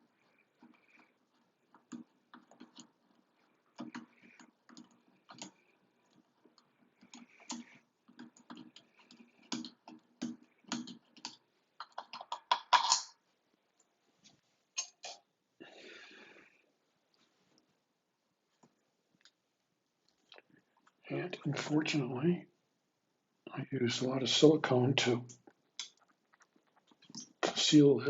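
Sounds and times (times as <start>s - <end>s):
metal parts being handled: 11.8s - 13.1s.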